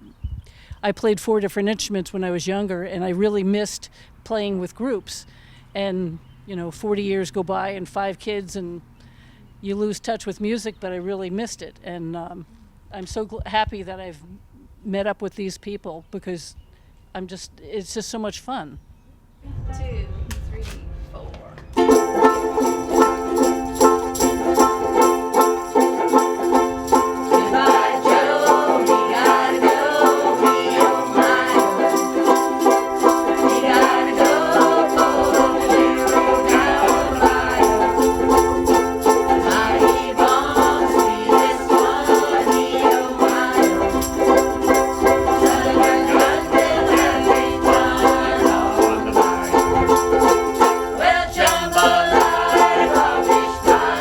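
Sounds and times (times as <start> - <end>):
ukuleles strumming: 21.8 - 54.0.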